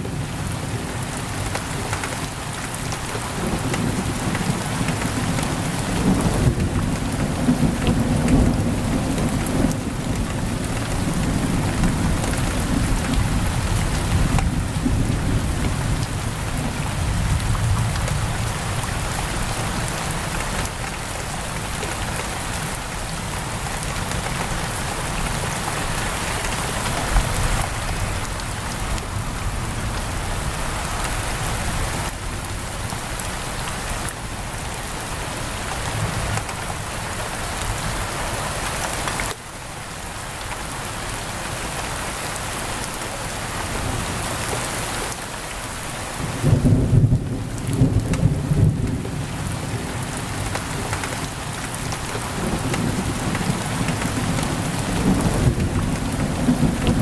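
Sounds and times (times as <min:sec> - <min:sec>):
heavy rain on a window: 0:00.0 - 0:57.0
thunder rumbling: 0:51.7 - 0:57.0.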